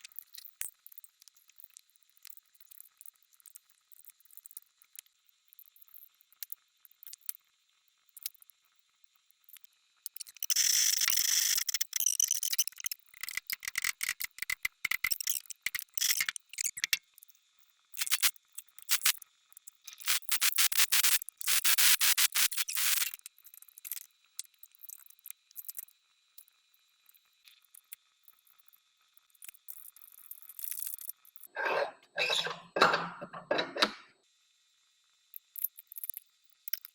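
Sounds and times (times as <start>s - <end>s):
scraping on metal parts: 31.6s - 34.0s.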